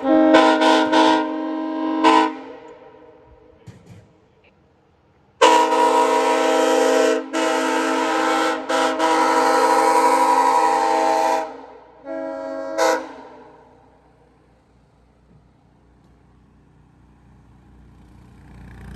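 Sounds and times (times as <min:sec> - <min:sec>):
train horn blowing: 0:00.0 - 0:03.2, 0:05.4 - 0:14.0.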